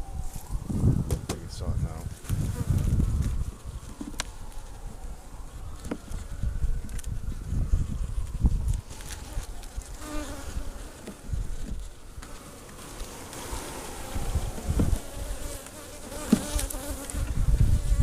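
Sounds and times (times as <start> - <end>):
honeybees buzzing: 8.9 - 18.0.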